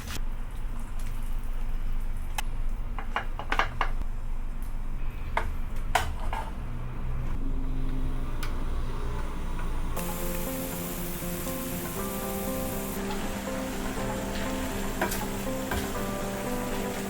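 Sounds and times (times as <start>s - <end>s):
background music: 10.0s - 17.0s
utensils clinking against cookware: 10.0s - 17.0s.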